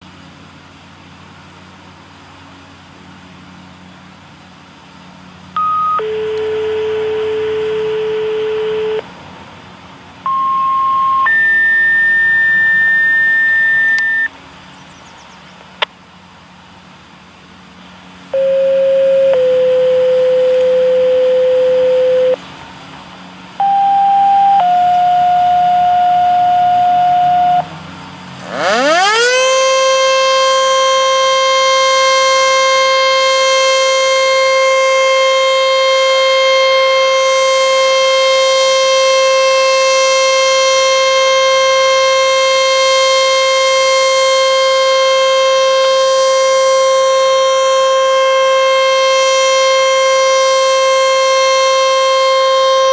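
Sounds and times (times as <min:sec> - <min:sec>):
warning siren: 0:05.6 - 0:09.0, 0:10.3 - 0:14.3, 0:18.4 - 0:22.4, 0:23.6 - 0:52.9.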